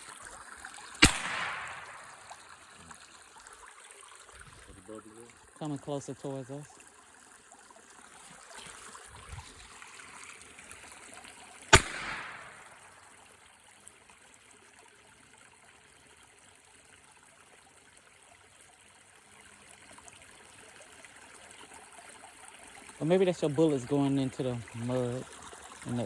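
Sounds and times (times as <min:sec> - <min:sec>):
flowing water trickle: 0:00.0 - 0:26.0
gunshot: 0:01.0 - 0:02.4, 0:11.8 - 0:12.9.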